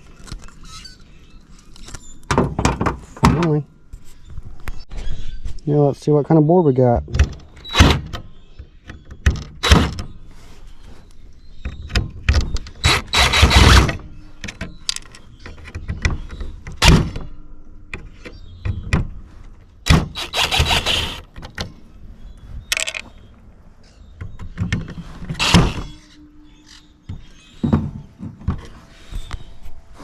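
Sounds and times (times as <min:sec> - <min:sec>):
scraping and rattling: 0:20.0 - 0:21.2.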